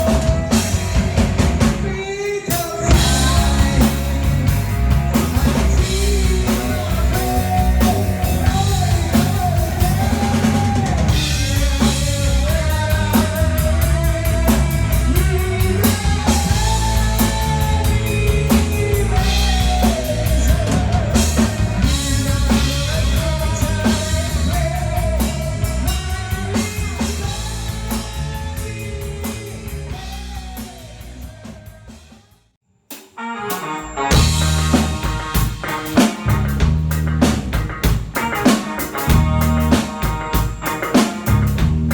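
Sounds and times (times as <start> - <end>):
bass guitar: 0.0 - 32.2, 33.5 - 41.9
drum kit: 0.0 - 41.9
wavering lead melody: 33.2 - 41.9.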